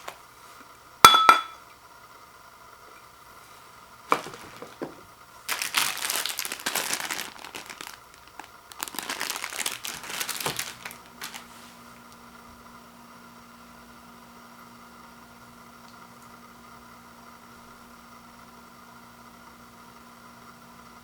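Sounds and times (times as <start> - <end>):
plastic wrappers crinkling: 0.0 - 0.2, 4.1 - 11.7.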